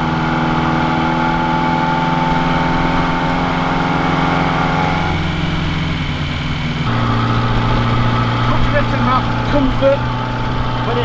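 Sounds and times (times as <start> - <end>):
car engine running: 0.0 - 11.0.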